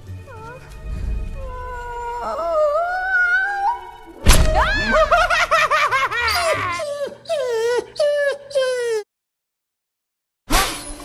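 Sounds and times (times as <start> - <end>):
film score music with held notes: 0.0 - 8.7
sudden loud thud: 4.2 - 4.7.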